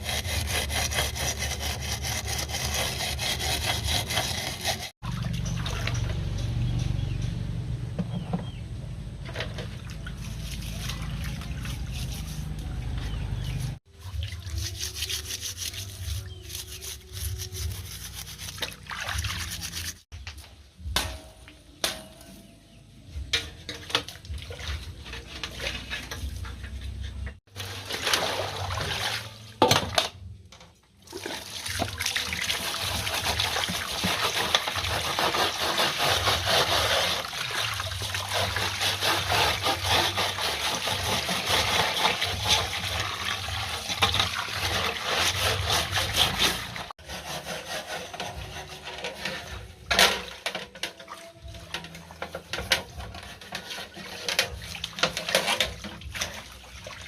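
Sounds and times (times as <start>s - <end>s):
water running and splashing: 17.9s - 20.1s, 31.0s - 46.9s.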